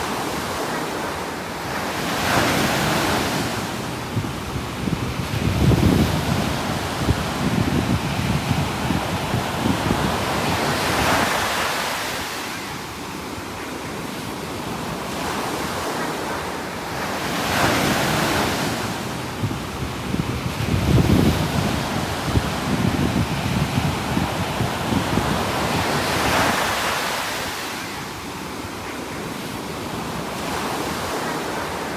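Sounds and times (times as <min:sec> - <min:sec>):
ocean waves breaking on shore: 0:00.0 - 0:31.9
wind buffeting microphone: 0:01.6 - 0:13.4, 0:16.8 - 0:28.4.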